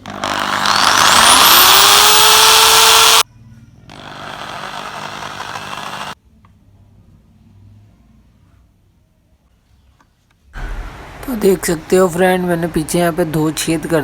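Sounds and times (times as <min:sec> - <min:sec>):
electric drill whine: 0:00.0 - 0:03.2, 0:03.9 - 0:06.2.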